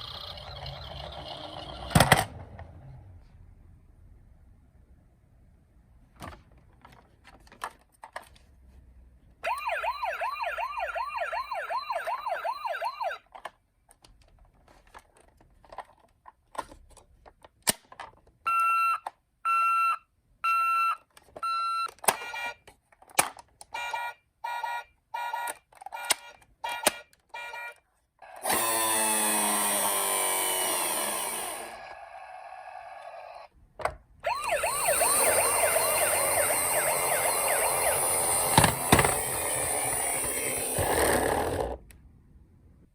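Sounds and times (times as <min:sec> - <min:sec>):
toy electronic siren tones: 0:00.0 - 0:01.9, 0:09.4 - 0:13.2, 0:18.5 - 0:22.6, 0:23.7 - 0:28.8, 0:34.2 - 0:41.0.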